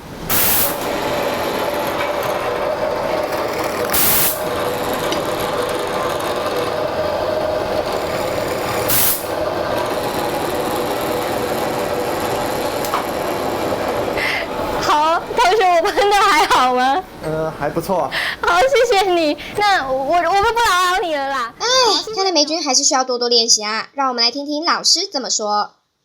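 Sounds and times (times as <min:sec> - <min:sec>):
air blow gun hissing: 0:00.0 - 0:17.2
woodworking machinery hum: 0:00.0 - 0:22.2.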